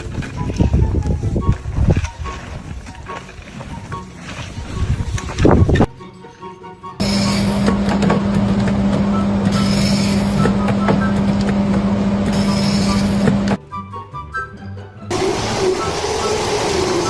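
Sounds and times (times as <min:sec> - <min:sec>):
machine humming: 0:07.0 - 0:13.6, 0:15.1 - 0:17.0.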